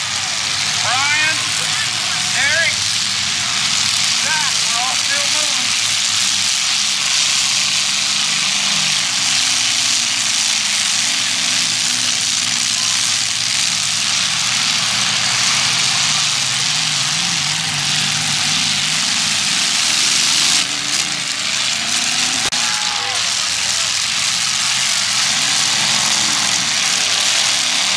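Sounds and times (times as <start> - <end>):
car engines revving loudly: 0.0 - 27.9
steady hiss: 0.0 - 27.9.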